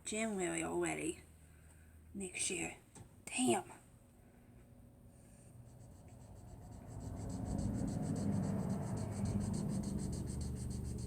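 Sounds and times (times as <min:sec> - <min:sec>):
colouring strokes on paper: 0:05.4 - 0:11.0.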